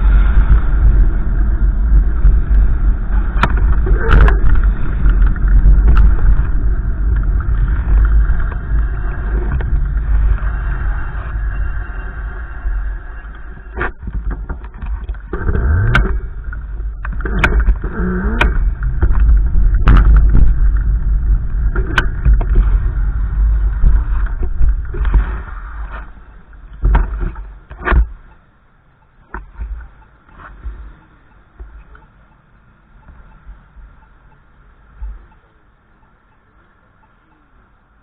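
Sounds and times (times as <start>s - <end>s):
wind buffeting microphone: 0.0s - 28.4s.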